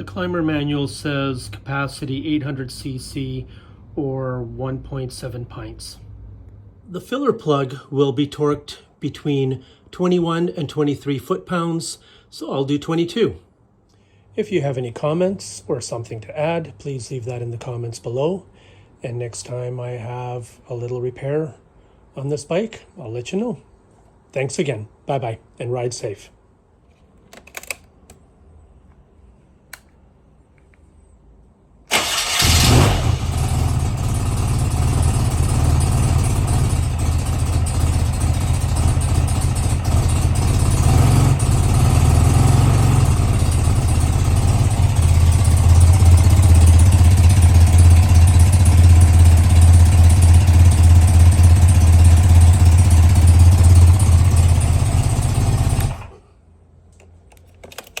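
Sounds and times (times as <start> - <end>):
motorcycle engine starting and idling: 0.0 - 5.8, 31.9 - 56.3.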